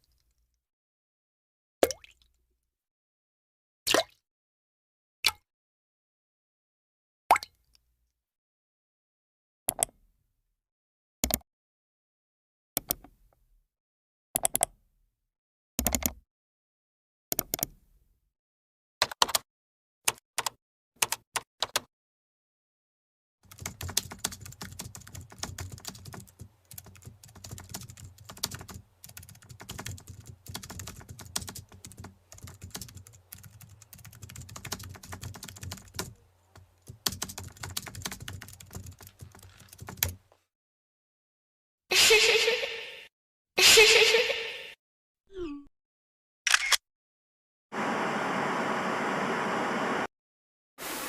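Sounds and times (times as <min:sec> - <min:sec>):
typing on computer keyboard: 0:15.8 - 0:16.2, 0:17.3 - 0:17.7, 0:19.0 - 0:19.4, 0:20.1 - 0:21.9, 0:23.5 - 0:40.2.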